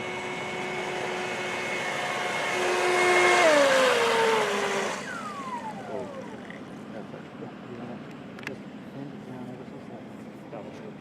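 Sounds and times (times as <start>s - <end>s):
electric motor whining: 0.0s - 6.9s.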